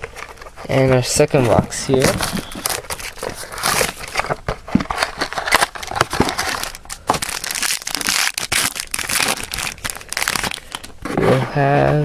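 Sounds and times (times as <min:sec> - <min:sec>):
plastic wrapper crinkling: 0:00.0 - 0:11.0
cardboard being torn open: 0:01.4 - 0:10.7.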